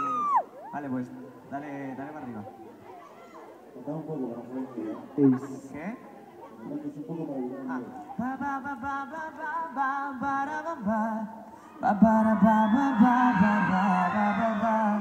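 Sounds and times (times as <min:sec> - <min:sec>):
male vocal group singing: 0:08.2 - 0:15.0.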